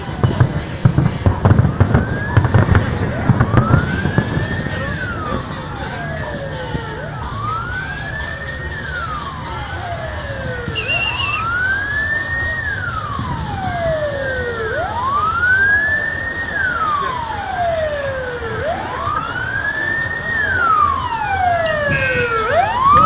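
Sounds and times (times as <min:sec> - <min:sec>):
faint second siren: 0:01.3 - 0:23.0
siren wailing: 0:01.6 - 0:23.0
high siren warble: 0:03.5 - 0:23.0.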